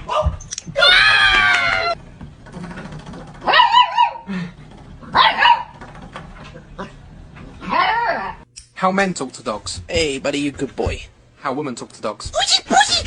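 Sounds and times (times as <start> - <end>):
dog crying: 3.4 - 4.3, 7.6 - 8.5.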